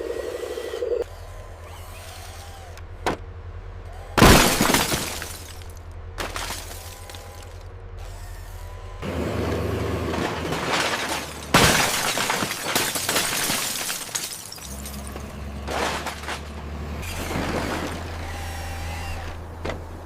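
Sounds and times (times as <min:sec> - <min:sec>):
cars crunching: 0:01.0 - 0:20.0
crackling breakage: 0:10.1 - 0:18.1.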